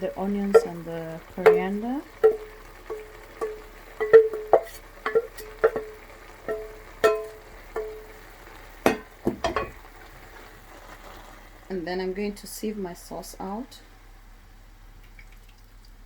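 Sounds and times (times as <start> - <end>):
plucked string notes: 0.0 - 8.2.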